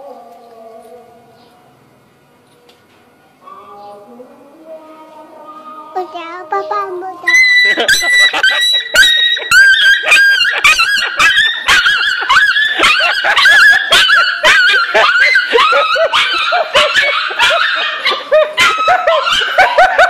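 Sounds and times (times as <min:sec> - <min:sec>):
dog yapping: 0:07.3 - 0:20.0.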